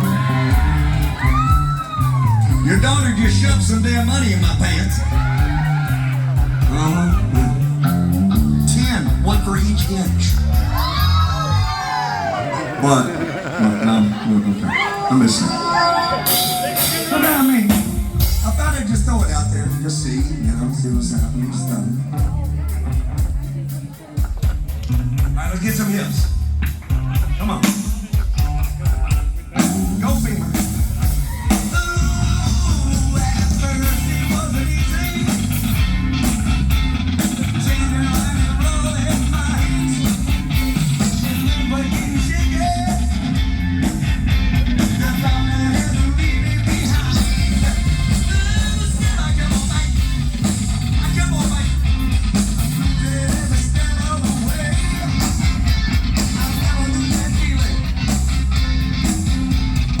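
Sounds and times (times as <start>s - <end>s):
heavy bass line: 0.0s - 11.7s, 16.4s - 60.0s
drums: 0.0s - 60.0s
guitar: 0.0s - 60.0s
lead vocal: 10.0s - 18.5s, 29.5s - 36.4s, 37.2s - 58.3s.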